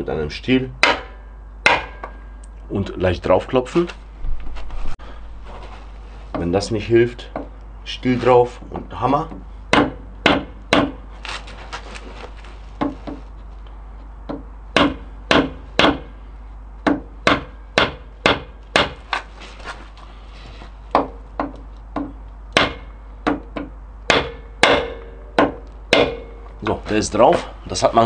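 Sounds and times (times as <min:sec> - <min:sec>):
hammer knocking on handle: 0:16.8 - 0:19.0.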